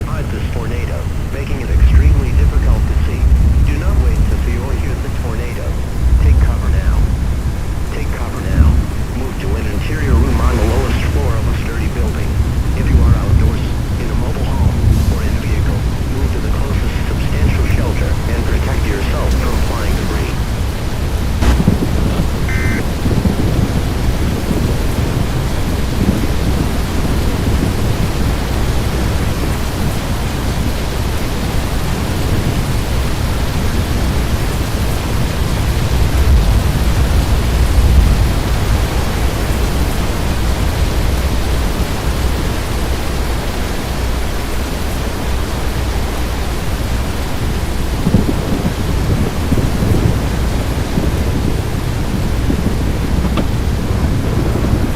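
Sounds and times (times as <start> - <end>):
storm wind buffeting microphone: 0.0 - 54.9.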